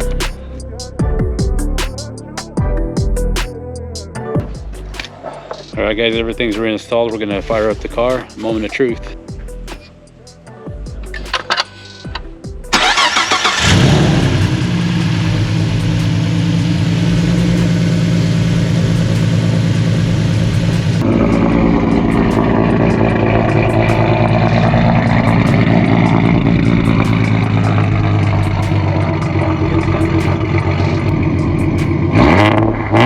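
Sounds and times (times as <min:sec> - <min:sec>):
car engine starter cranking: 0:11.2 - 0:12.1, 0:12.7 - 0:33.0
car engine idling: 0:12.7 - 0:33.0.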